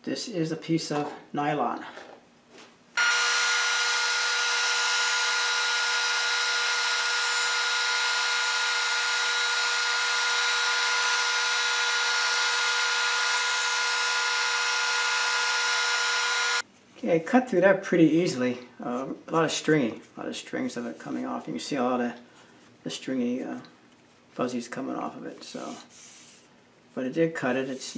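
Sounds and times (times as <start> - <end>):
band saw cutting nylon: 3.0 - 16.6.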